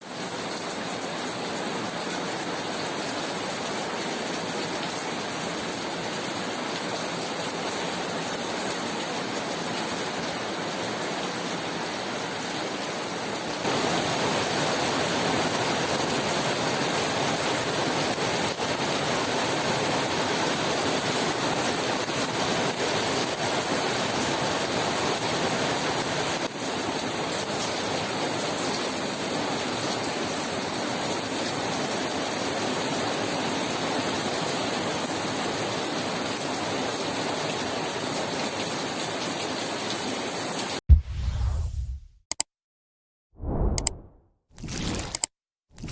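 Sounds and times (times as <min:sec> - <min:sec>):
steady rainfall: 0:00.0 - 0:40.8.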